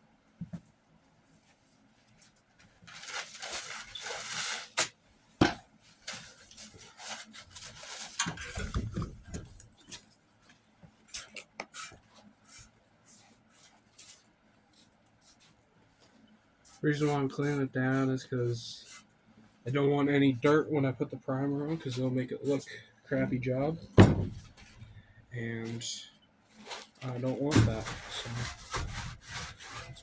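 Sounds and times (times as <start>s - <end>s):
wiping sheet metal panel: 26.6s - 30.0s.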